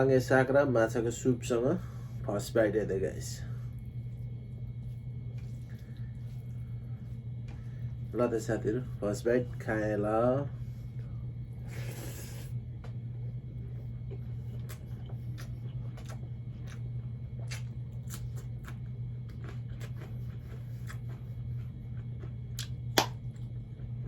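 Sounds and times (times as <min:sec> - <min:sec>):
steady low hum: 0:00.0 - 0:24.0
chewing and wet mouth clicks: 0:14.1 - 0:21.2, 0:21.9 - 0:23.6.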